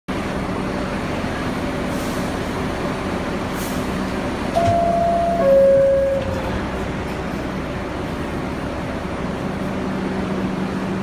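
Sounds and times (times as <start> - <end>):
subway car humming: 0.1 - 11.0
two-tone door chime: 4.6 - 6.6.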